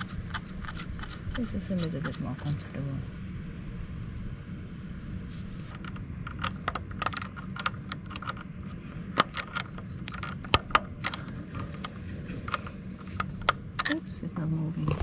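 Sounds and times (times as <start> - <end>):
steady low hum: 0.0 - 15.0
metal tools clicking and clinking: 5.6 - 14.0.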